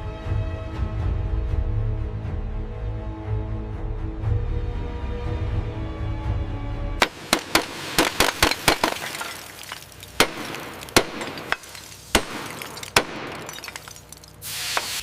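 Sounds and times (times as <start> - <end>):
music: 0.0 - 7.1.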